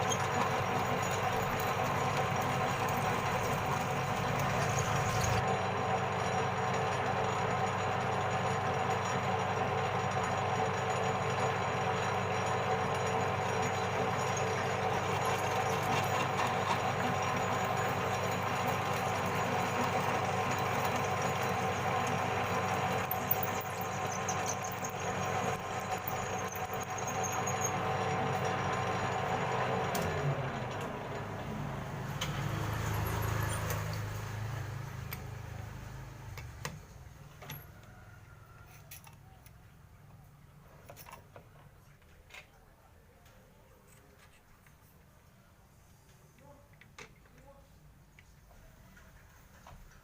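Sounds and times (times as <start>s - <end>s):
metal lathe whirring: 0.0s - 36.4s.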